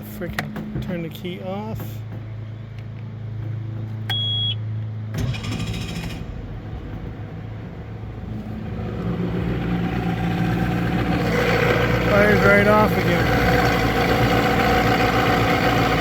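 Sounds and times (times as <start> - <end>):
short electronic beep: 4.1 - 4.6
electric starter cranking: 5.2 - 7.2, 8.2 - 16.0
outboard engine running: 5.2 - 16.0.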